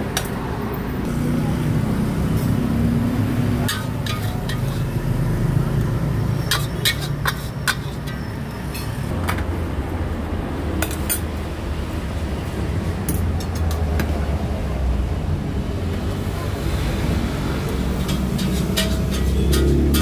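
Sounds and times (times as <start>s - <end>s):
metal spatula scraping a wok: 3.6s - 5.5s, 6.2s - 9.1s, 17.8s - 20.0s.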